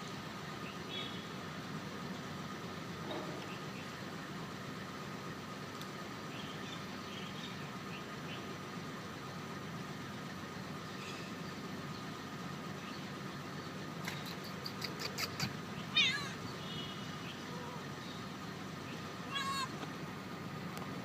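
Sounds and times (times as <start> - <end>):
low background hum: 0.0 - 21.0
kitten squeaking: 14.0 - 16.4, 19.3 - 19.8.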